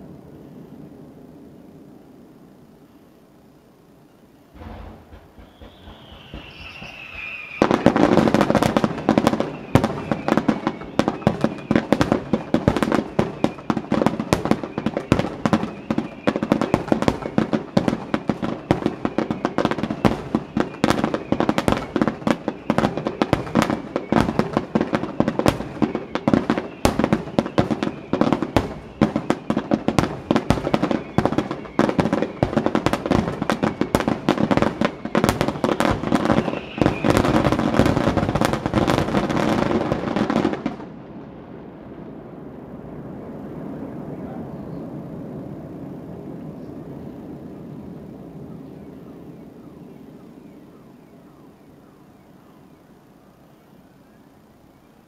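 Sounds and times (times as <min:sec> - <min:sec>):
firework whistle: 0:04.5 - 0:41.0
fireworks bangs and crackles: 0:04.5 - 0:49.9.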